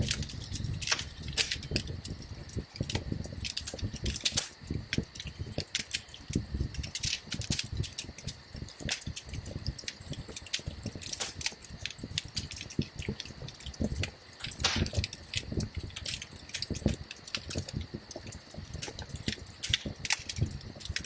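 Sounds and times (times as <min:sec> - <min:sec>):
wood fire crackling: 0:00.0 - 0:21.0.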